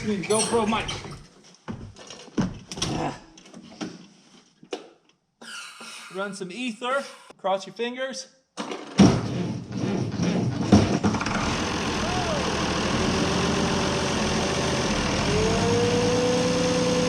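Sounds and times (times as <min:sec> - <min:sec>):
tractor diesel engine starting: 0:11.0 - 0:17.0
engine whining tone: 0:11.2 - 0:17.0.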